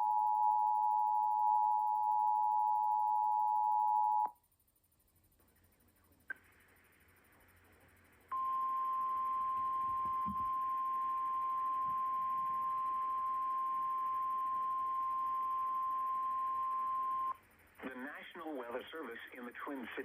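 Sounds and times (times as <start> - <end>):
faint radio hiss: 4.3 - 20.0
steady high alarm tone: 8.3 - 17.4.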